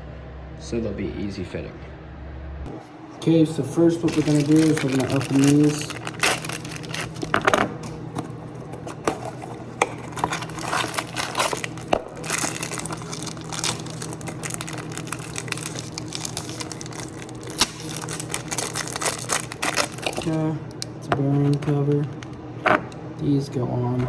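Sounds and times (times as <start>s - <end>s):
low hum: 0.0s - 24.0s
packaging crinkling and tearing: 3.8s - 20.5s.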